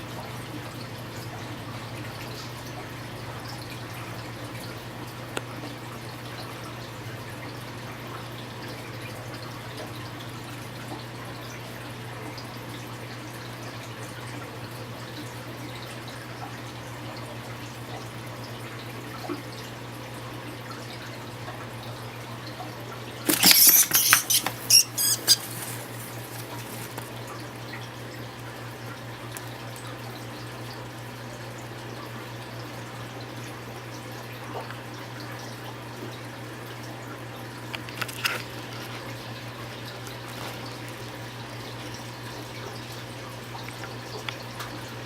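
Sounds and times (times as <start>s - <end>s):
crackling and rustling clicks: 23.3s - 27.2s, 37.7s - 41.2s.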